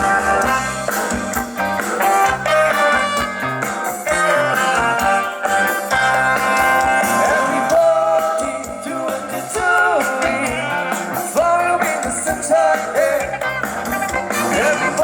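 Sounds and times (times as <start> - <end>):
band playing: 0.0 - 15.0
person singing: 6.6 - 13.5, 14.4 - 15.0.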